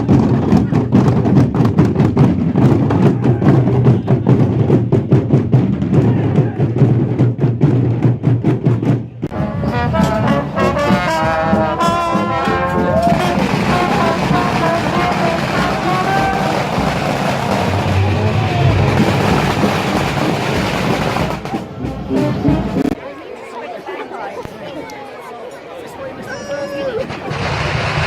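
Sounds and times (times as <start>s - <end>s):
rapid drumming: 0.0s - 23.0s
crowd noise: 0.0s - 28.0s
brass instruments playing: 9.3s - 23.0s.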